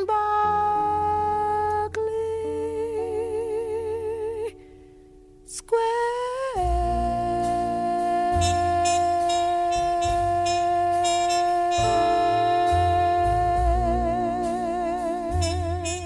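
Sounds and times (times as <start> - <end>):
slow jazz ballad: 0.0 - 16.0
long held note with vibrato: 7.0 - 16.0.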